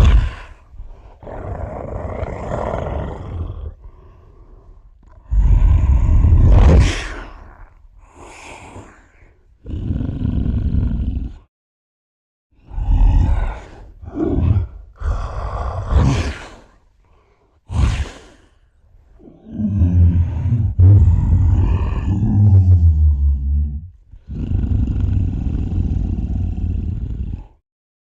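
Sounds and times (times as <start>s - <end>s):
creature roaring: 0.0s - 4.0s, 5.0s - 7.8s, 12.7s - 16.6s, 19.2s - 27.6s
creature growling: 0.0s - 8.9s, 9.6s - 11.5s, 12.6s - 16.7s, 19.2s - 27.6s.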